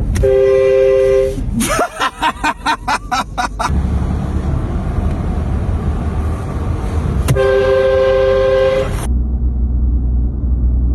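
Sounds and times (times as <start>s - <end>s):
car engine rumble: 0.0s - 10.9s
train horn blast: 0.2s - 1.5s, 7.3s - 9.1s.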